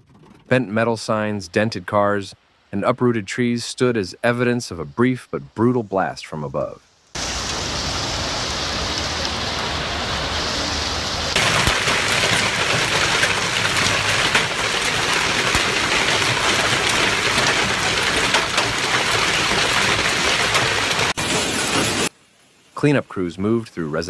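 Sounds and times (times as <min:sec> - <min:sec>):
heavy rain hissing: 0:00.8 - 0:24.0
hailstones ticking: 0:11.3 - 0:22.1.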